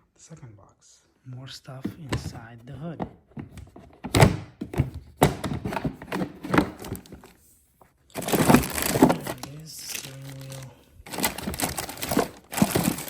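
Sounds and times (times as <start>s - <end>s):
hard plastic parts knocking: 1.8s - 7.4s, 8.1s - 13.0s.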